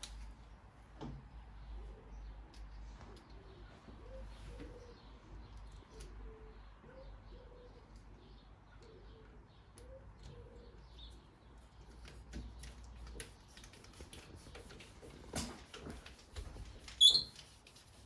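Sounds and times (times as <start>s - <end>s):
pigeon cooing: 6.0s - 7.9s.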